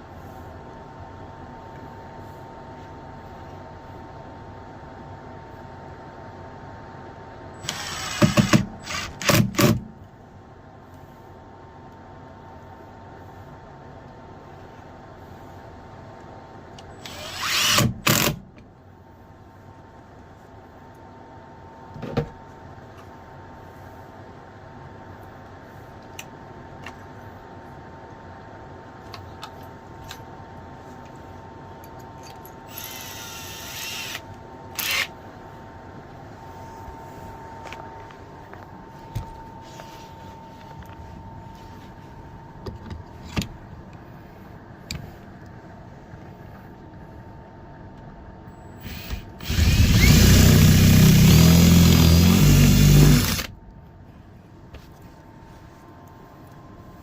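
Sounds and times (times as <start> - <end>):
faint steady hum: 0.0 - 57.0
power drill running: 7.6 - 9.8, 17.0 - 18.4, 32.7 - 35.1, 48.8 - 53.5.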